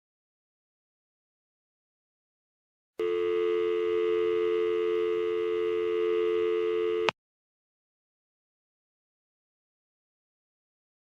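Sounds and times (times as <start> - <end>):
telephone dial tone: 3.0 - 7.2.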